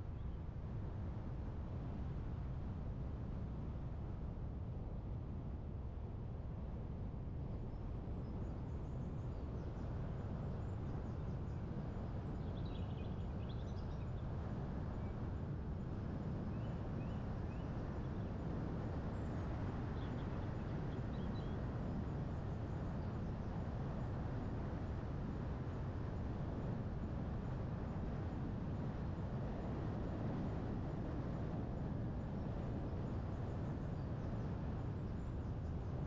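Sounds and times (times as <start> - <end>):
low wind noise: 14.2 - 36.0.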